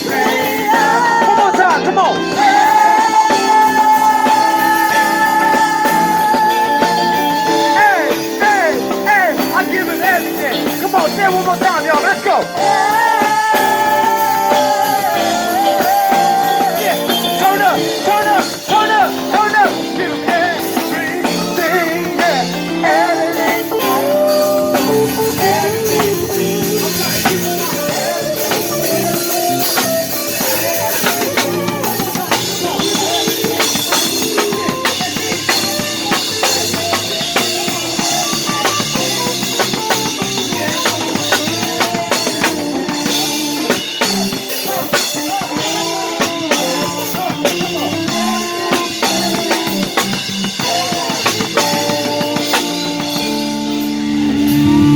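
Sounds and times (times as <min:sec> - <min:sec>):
live band music: 0:00.0 - 0:54.9
wavering lead melody: 0:51.4 - 0:54.9.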